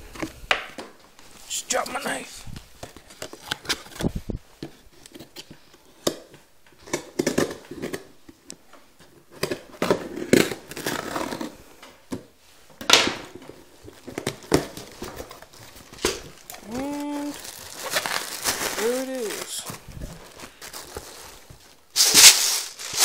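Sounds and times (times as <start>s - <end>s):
cardboard package being opened: 13.9s - 23.0s.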